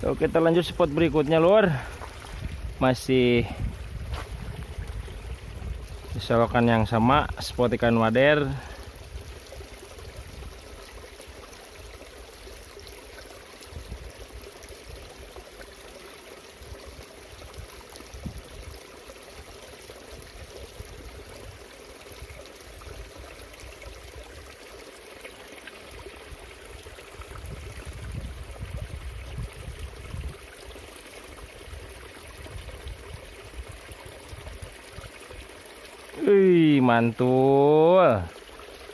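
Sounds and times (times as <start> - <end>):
water rushing along ditch: 0.0 - 38.9
low rumbles on microphone: 3.4 - 6.3.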